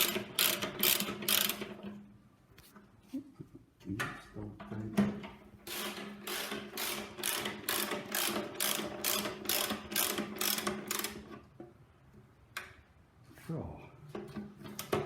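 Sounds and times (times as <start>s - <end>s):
ratchet wrench clicking: 0.0s - 1.7s, 5.7s - 11.3s.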